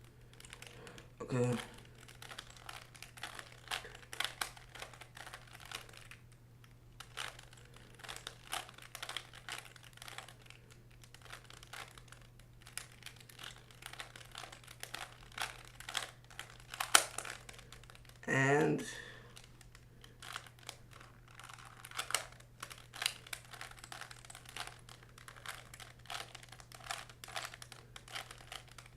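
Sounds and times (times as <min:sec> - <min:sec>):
faint low hum: 0:00.0 - 0:28.9
puzzle cube clicking: 0:19.4 - 0:28.9.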